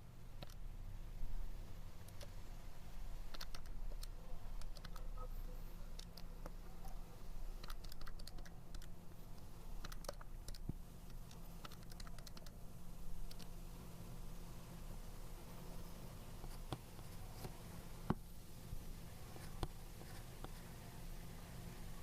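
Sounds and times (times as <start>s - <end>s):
faint low hum: 0.0s - 22.0s
keys clicking: 3.3s - 5.2s, 5.9s - 12.6s.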